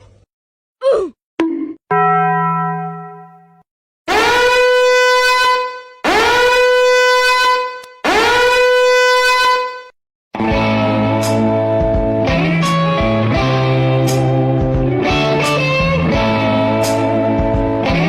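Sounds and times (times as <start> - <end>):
horn blasts: 4.1 - 10.0.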